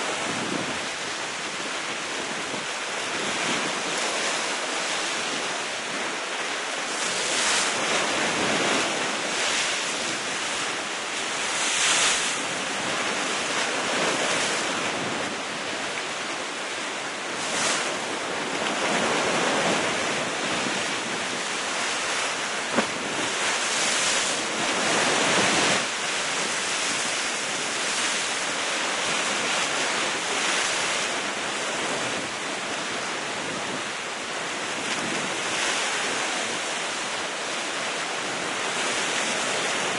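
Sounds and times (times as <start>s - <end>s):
wind on microphone: 0.0s - 6.2s, 6.9s - 39.9s
waves breaking against rocks: 17.2s - 36.7s.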